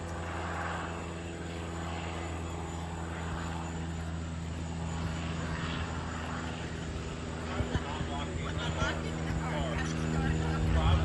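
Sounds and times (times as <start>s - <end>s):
propeller aircraft engine drone: 0.0s - 11.0s.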